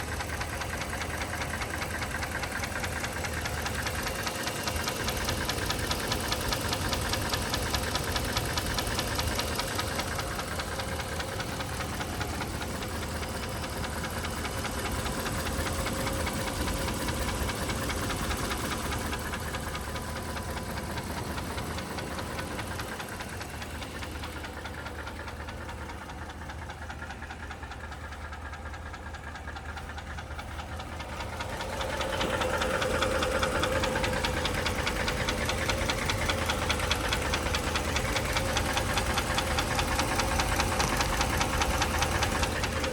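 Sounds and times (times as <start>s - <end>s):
engine running with fast ticking: 0.0s - 42.9s.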